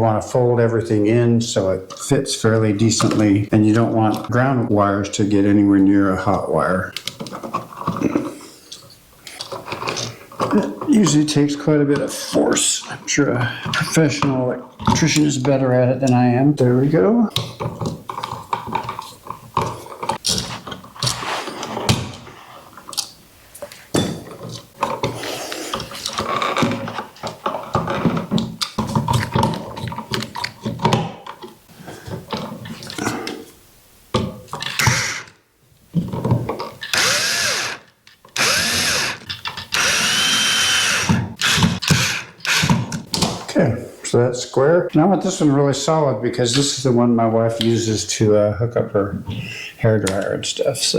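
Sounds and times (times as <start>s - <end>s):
power drill driving screws: 34.7s - 35.3s, 36.8s - 42.8s.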